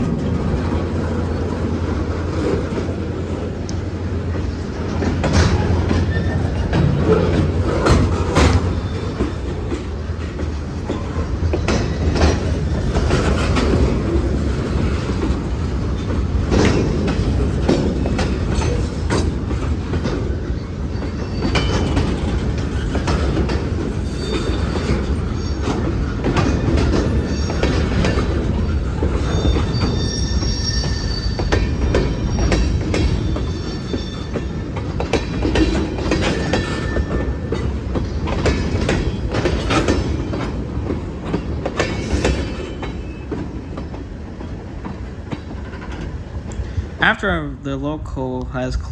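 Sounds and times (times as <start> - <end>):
train wheels clicking over rail joints: 0.0 - 47.0
train rumble: 0.0 - 48.9
wheel flanges squealing: 4.4 - 14.2, 20.3 - 40.6.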